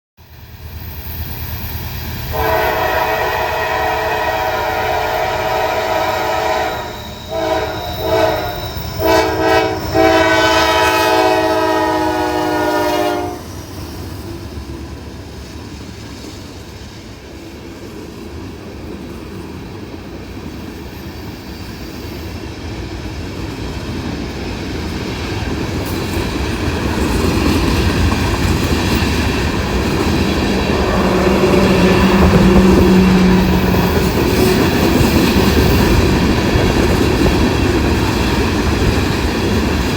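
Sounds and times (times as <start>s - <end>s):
passing train rumble: 0.2s - 39.9s
locomotive air horn blasts: 2.3s - 13.5s, 30.4s - 35.0s.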